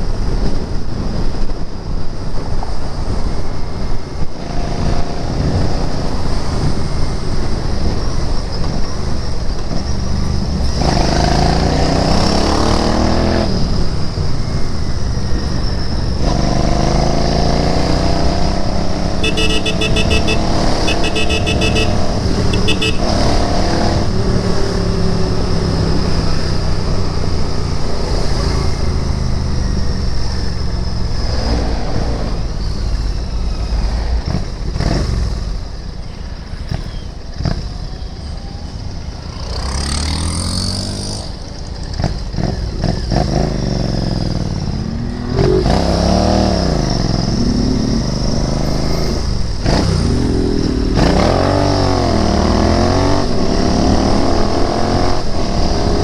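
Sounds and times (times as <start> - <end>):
motorcycle engine revving: 15.7 - 26.8.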